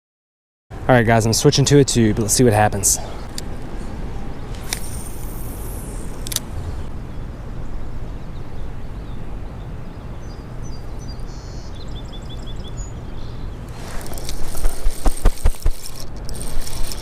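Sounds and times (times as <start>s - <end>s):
wind: 0.7s - 17.0s
sharp clicks: 4.5s - 6.5s, 13.7s - 17.0s
rustling: 13.7s - 17.0s.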